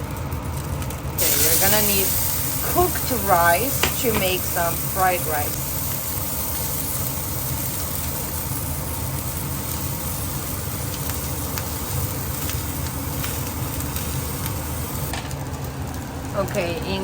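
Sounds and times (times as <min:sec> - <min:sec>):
kitchen equipment humming: 0:00.0 - 0:17.0.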